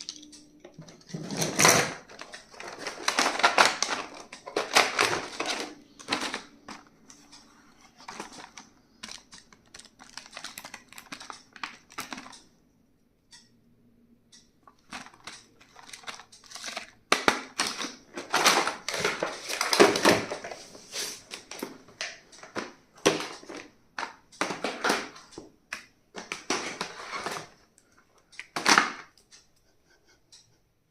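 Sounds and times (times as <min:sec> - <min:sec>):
clicks and taps: 0:00.0 - 0:13.6
packaging rustling: 0:01.0 - 0:12.3, 0:14.8 - 0:25.2.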